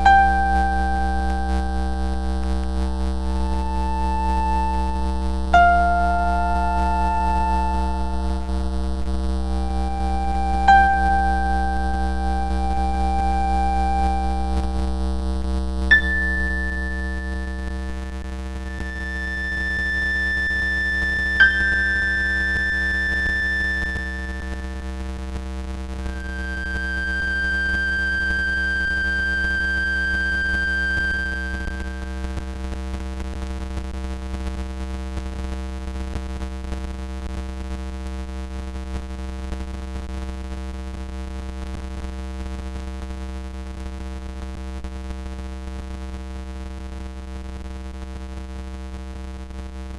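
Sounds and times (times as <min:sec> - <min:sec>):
high held synth tones: 0:00.0 - 0:15.1, 0:15.9 - 0:25.2, 0:26.0 - 0:32.6
synthesizer drone: 0:00.0 - 0:15.2, 0:15.9 - 0:25.2, 0:26.0 - 0:32.6
low hum: 0:00.0 - 0:32.8.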